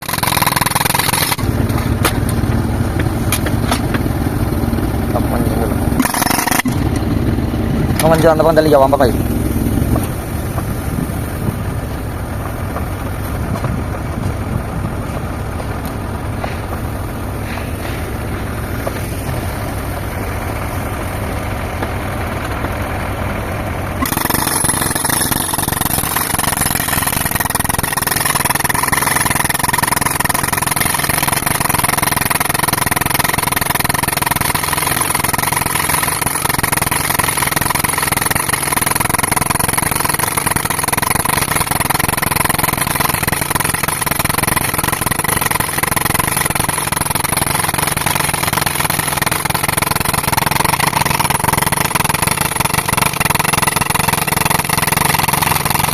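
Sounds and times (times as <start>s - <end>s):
high whine: 0.0s - 32.0s
tractor engine droning: 0.0s - 55.9s.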